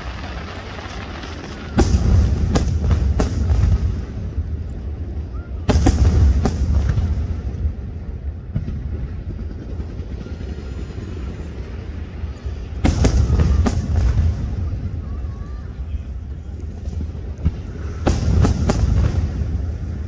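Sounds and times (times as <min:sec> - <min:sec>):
rumble of firework bursts: 0:00.0 - 0:20.0
sharp loud firework bangs: 0:01.3 - 0:04.1, 0:05.7 - 0:07.4, 0:12.8 - 0:15.2, 0:17.4 - 0:20.0.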